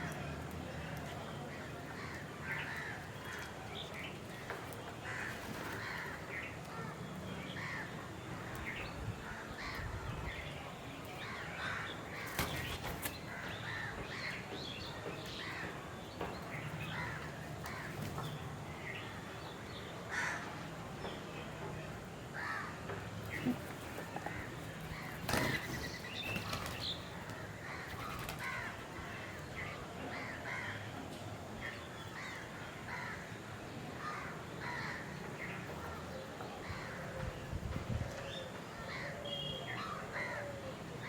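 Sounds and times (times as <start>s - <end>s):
crows cawing: 1.6s - 3.5s, 5.0s - 7.0s, 7.6s - 8.5s, 11.2s - 12.4s, 13.2s - 14.4s, 16.9s - 18.1s, 20.1s - 20.6s, 22.4s - 22.9s, 26.5s - 31.0s, 32.2s - 35.3s, 39.8s - 40.6s
bird calls: 22.4s - 30.8s.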